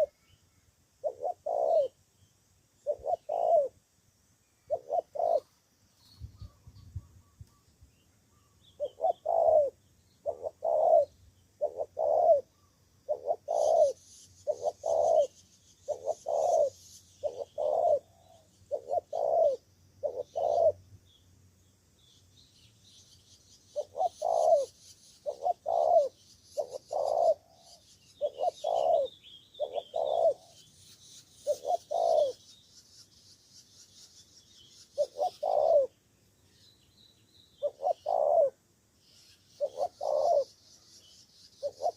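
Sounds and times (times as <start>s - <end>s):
small birds chirping faintly: 0.0s - 41.9s
dove cooing: 1.0s - 2.0s, 2.8s - 3.8s, 4.7s - 5.6s, 8.8s - 20.9s, 23.7s - 30.7s, 31.3s - 32.4s, 34.9s - 35.9s, 37.6s - 38.6s, 39.6s - 40.6s, 41.6s - 41.9s.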